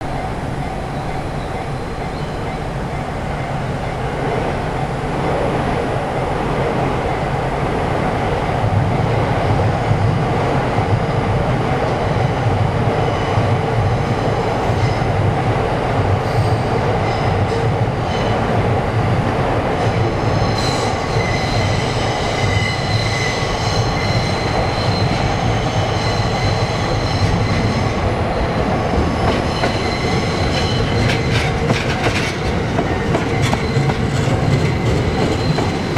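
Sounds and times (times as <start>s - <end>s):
train rumble: 0.0s - 35.9s
high-pitched wheel squeal: 20.3s - 28.0s, 29.2s - 31.3s.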